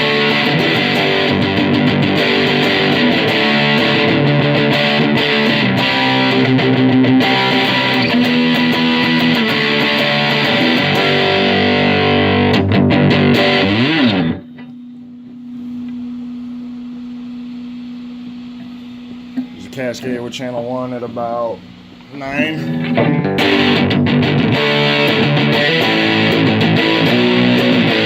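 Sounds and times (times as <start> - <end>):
distorted electric guitar riffing: 0.0 - 14.7, 22.1 - 28.0.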